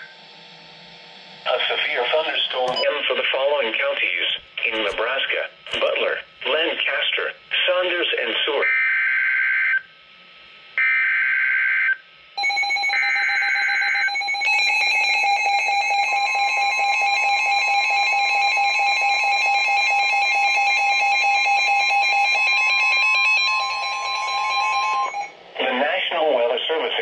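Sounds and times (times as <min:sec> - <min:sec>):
steady warning alarm tone: 0:00.0 - 0:03.0, 0:10.8 - 0:25.4
warbling electronic alert alarm: 0:10.8 - 0:25.4
shrill two-tone digital header: 0:20.9 - 0:25.4.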